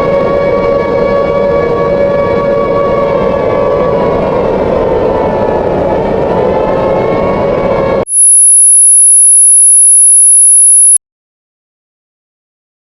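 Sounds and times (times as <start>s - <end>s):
high-pitched steady pure tone: 8.1s - 11.0s.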